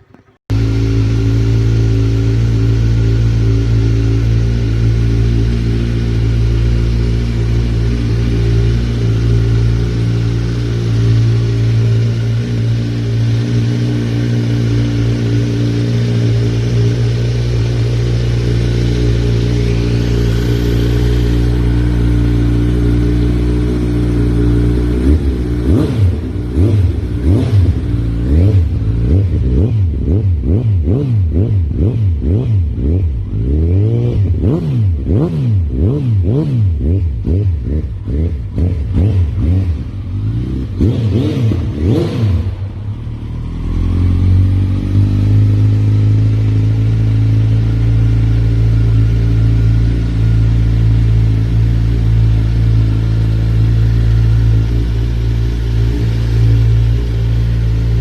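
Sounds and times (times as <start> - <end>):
motorcycle engine running: 0.0 - 58.0
motorcycle throttle blips: 0.0 - 58.0.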